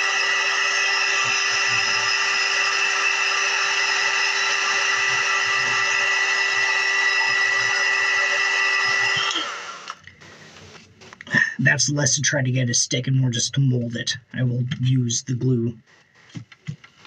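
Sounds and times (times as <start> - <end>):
hot-air blower whining: 0.0 - 11.5.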